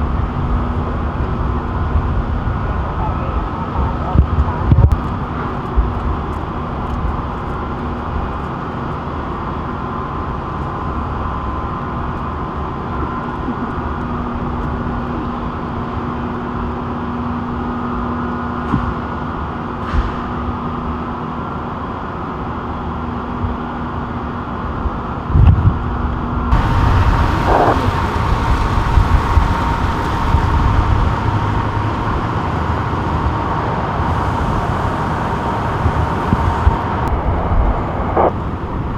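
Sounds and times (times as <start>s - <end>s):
motor vehicles running: 26.5s - 38.9s.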